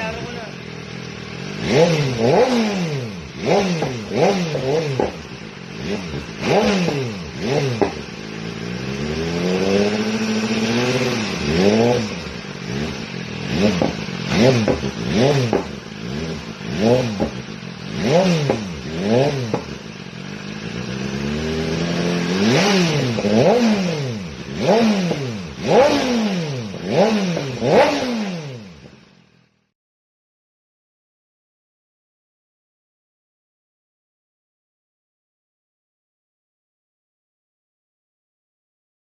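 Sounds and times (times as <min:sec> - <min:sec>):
motorcycle engine revving: 0:00.0 - 0:29.6.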